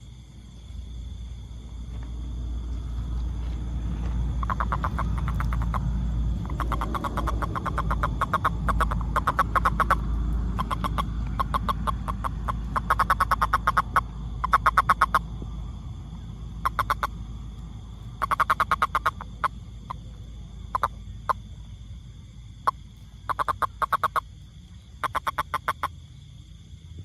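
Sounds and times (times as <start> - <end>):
frog calling in pulse trains: 4.3 - 26.5
single frog clicks: 4.4 - 15.3, 16.6 - 17.2, 18.2 - 20.0, 20.7 - 21.4, 22.6 - 24.3, 25.0 - 26.0.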